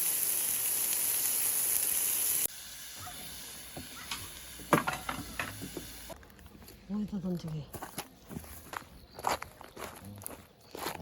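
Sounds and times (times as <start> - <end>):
loud steady hiss: 0.0 - 6.2.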